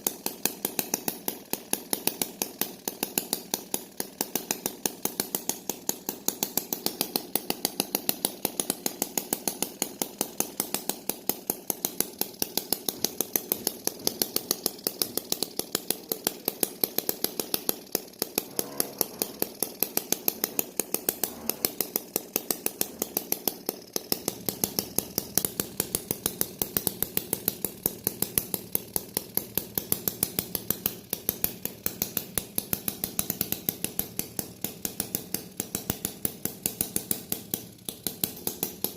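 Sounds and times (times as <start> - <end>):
steady mid-pitched hum: 18.4 - 21.8.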